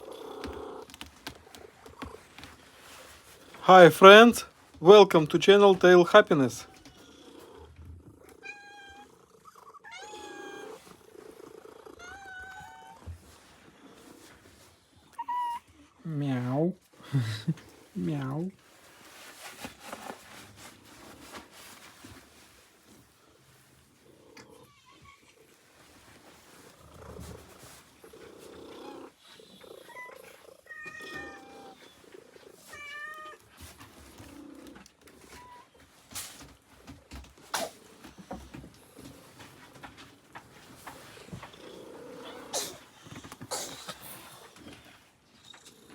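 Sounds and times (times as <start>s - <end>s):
cat purring: 0.0s - 8.4s, 9.0s - 15.1s, 22.4s - 24.7s, 25.3s - 32.7s, 33.5s - 35.4s, 37.0s - 45.9s
cat meowing: 8.4s - 9.1s, 9.8s - 10.8s, 12.0s - 13.0s, 29.9s - 31.8s, 32.7s - 33.4s.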